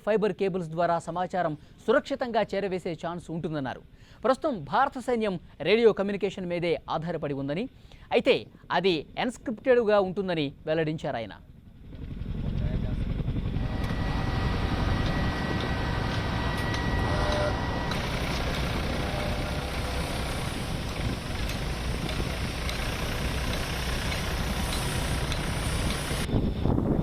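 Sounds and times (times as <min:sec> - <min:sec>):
engine rumble: 0:11.6 - 0:27.0
thin high whine: 0:13.2 - 0:27.0.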